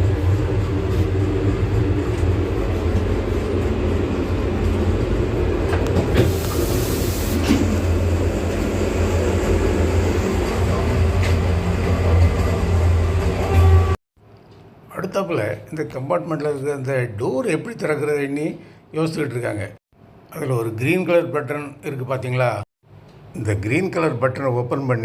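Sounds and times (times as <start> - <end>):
train wheels rumbling on track: 0.0 - 14.0.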